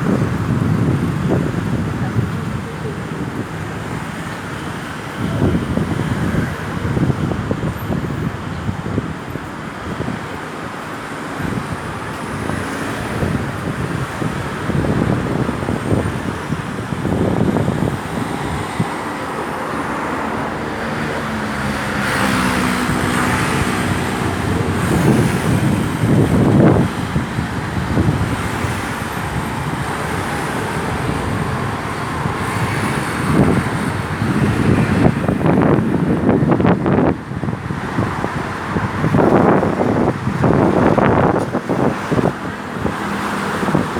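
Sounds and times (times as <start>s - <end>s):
vehicles driving past: 0.0s - 43.9s
vehicle engine passing close: 12.4s - 43.9s.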